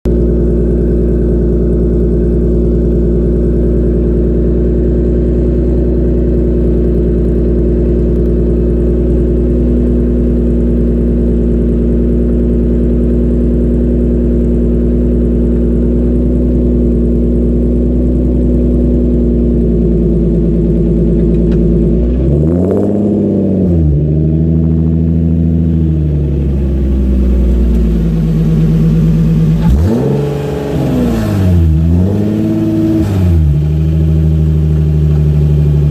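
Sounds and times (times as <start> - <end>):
car engine idling and revving: 0.1 - 35.9.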